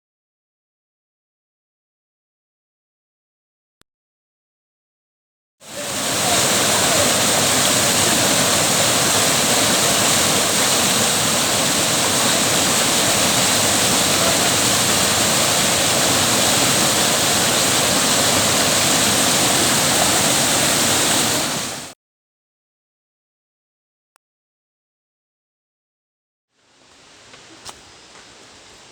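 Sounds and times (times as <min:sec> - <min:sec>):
waterfall roaring: 0:05.7 - 0:21.9.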